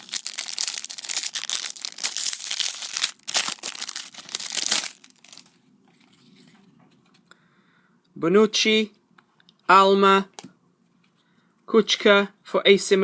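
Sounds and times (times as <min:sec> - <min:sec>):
foil wrapper crinkling: 0:00.0 - 0:05.6.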